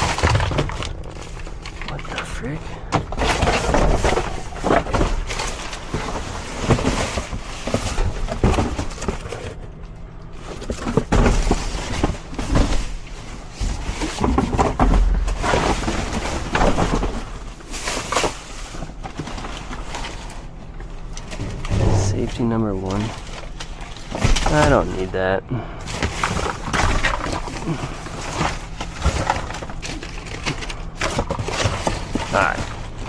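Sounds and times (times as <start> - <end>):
rummaging through trash: 0.0 - 33.0
low thumps: 21.4 - 23.9.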